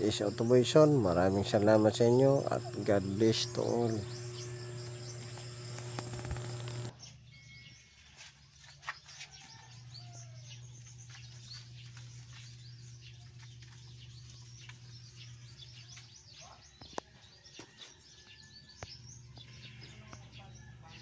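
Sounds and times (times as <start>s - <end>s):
faint low hum: 0.0s - 7.0s
steady hum: 0.0s - 7.0s
birds chirping: 0.0s - 21.0s.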